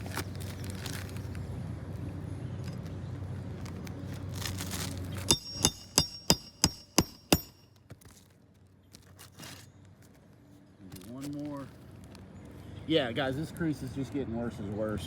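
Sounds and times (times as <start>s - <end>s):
hammer striking nail: 5.3s - 7.7s.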